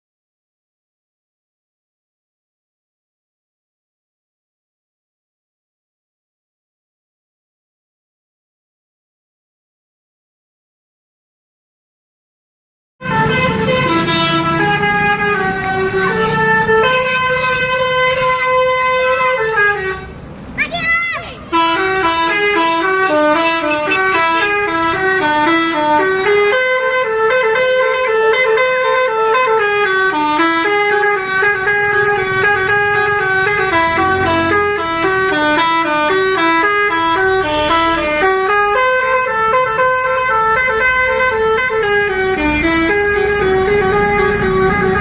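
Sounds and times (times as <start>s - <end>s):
multi-note air horn melody: 13.0s - 20.1s, 21.5s - 45.0s.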